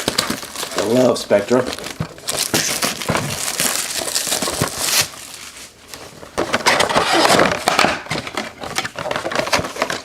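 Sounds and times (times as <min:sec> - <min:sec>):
cardboard packaging crinkling: 0:00.0 - 0:10.0.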